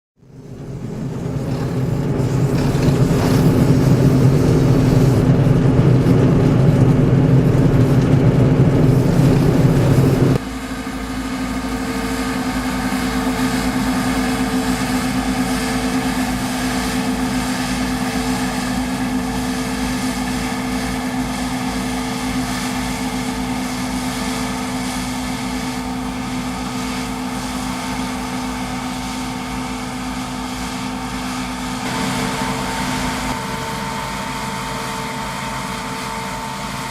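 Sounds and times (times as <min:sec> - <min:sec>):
combine harvester running: 0:00.2 - 0:36.9.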